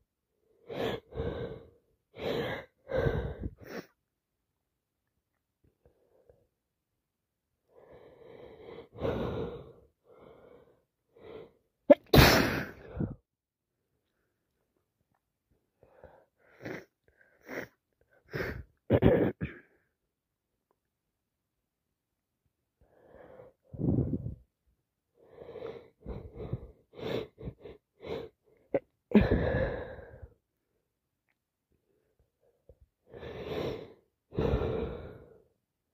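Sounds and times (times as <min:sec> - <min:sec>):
woman sneezing loudly: 0:11.9 - 0:12.9
woman gasping in-breaths: 0:12.6 - 0:13.2, 0:29.1 - 0:30.3.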